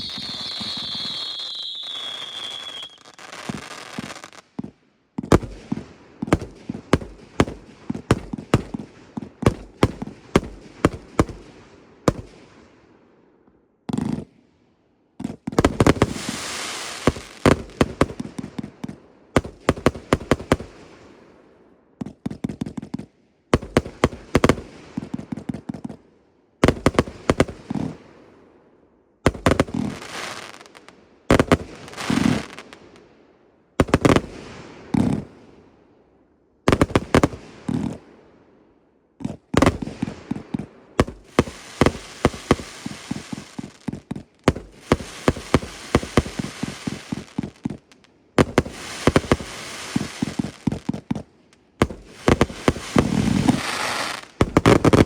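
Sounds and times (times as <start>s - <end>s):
firework reports with crackle: 0.0s - 4.4s, 15.7s - 18.2s, 39.2s - 47.8s, 48.4s - 55.0s.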